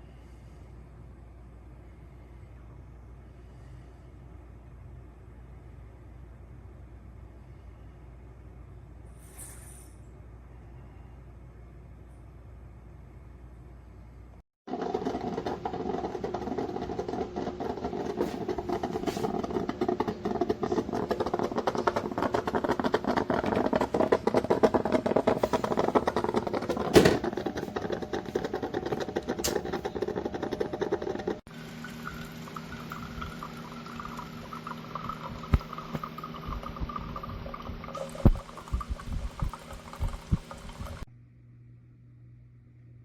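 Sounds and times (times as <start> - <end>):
coffee maker gurgling sputter: 14.7 - 41.1.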